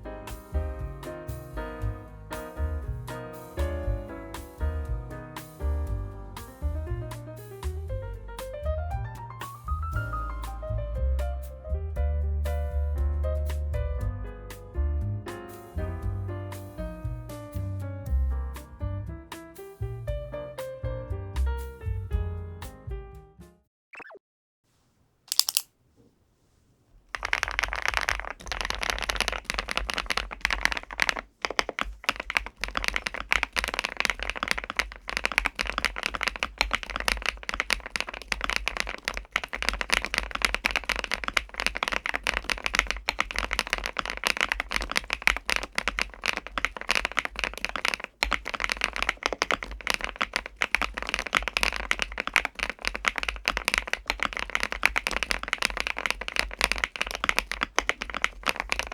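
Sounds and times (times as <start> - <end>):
mechanical keyboard typing: 25.3 - 25.7, 27.1 - 58.9.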